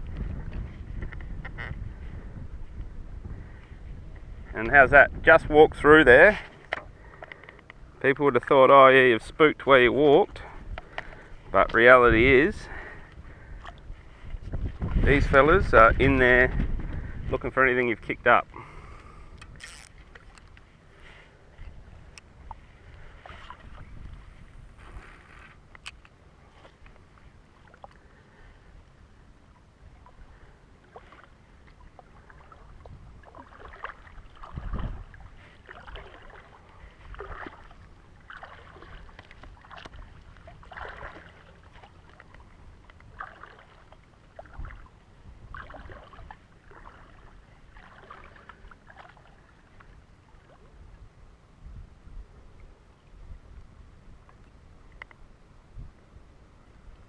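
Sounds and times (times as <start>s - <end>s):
splashes of wading in water: 10.0s - 15.7s, 18.6s - 28.7s, 29.8s - 51.0s.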